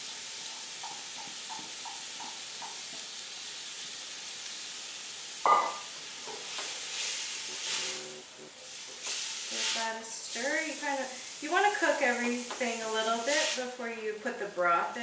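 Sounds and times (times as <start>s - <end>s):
meat sizzling in a pot: 0.0s - 15.0s.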